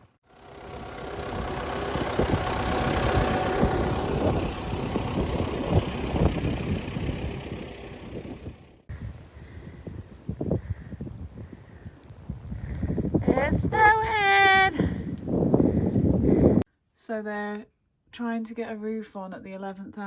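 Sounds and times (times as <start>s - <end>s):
tractor engine running: 0.0s - 16.6s.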